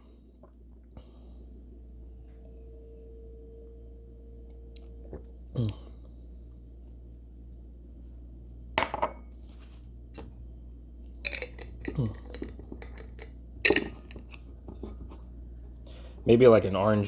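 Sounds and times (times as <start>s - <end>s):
glass bottle knocking on hard surface: 8.8s - 9.2s.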